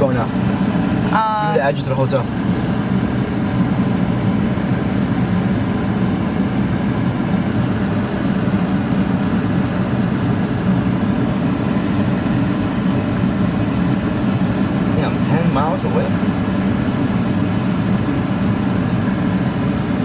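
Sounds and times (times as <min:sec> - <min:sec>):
car engine rumbling: 0:00.0 - 0:20.0.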